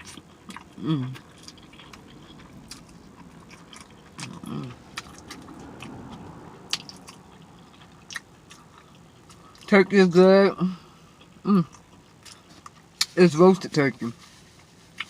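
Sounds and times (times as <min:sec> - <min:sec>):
person chewing with wet smacking: 0:00.0 - 0:10.0, 0:11.2 - 0:13.3, 0:14.5 - 0:15.0
person humming: 0:00.8 - 0:01.2.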